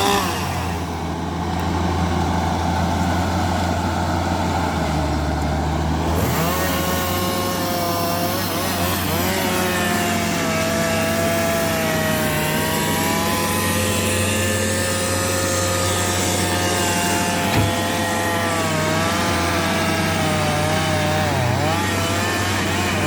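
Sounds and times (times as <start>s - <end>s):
bulldozer diesel engine running: 0.0s - 23.0s.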